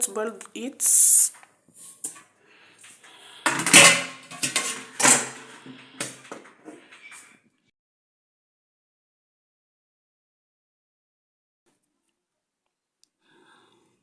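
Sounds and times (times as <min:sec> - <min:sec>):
metal cooking pot clattering: 0:02.8 - 0:07.2.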